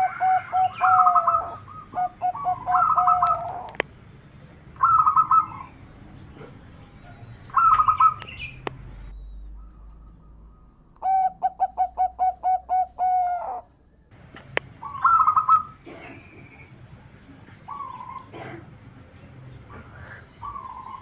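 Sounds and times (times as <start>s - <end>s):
dove cooing: 0.0s - 3.8s, 4.8s - 8.6s, 9.5s - 13.7s, 14.8s - 16.7s, 17.7s - 18.8s, 19.7s - 21.0s
faint bird calls: 0.0s - 21.0s.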